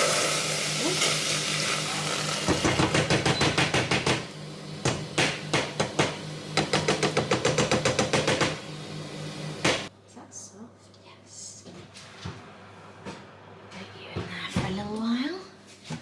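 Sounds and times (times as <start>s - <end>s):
microwave oven humming: 0.0s - 9.9s
rapid regular knocking: 2.5s - 8.6s.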